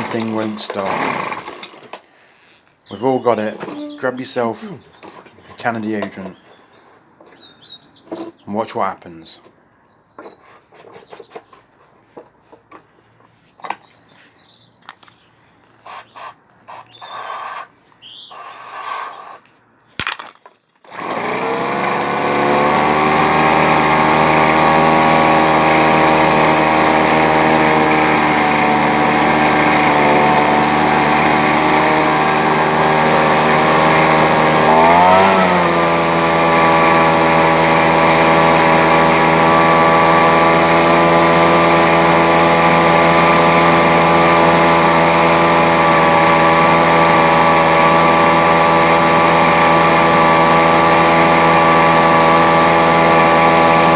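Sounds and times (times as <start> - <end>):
leaf blower engine running: 0.0 - 2.6, 20.8 - 53.9.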